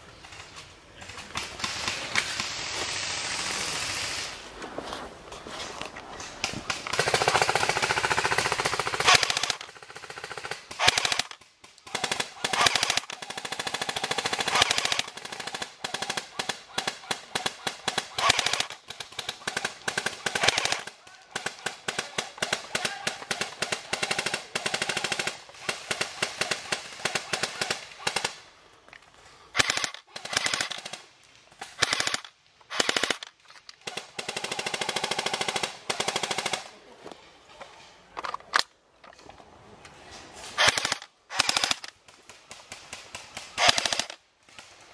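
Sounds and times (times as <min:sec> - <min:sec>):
airsoft guns firing full-auto: 0:06.6 - 0:28.4, 0:29.5 - 0:36.7, 0:40.6 - 0:44.9.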